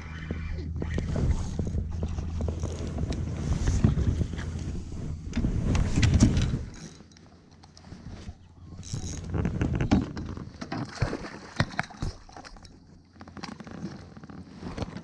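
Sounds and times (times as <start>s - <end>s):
wind rumbling on microphone: 0.0s - 7.0s, 7.9s - 10.6s.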